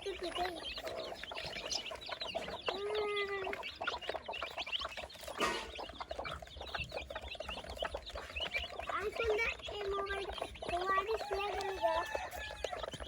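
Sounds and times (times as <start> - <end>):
chickens clucking: 0.0 - 13.0
long drawn-out chicken call: 11.2 - 13.0.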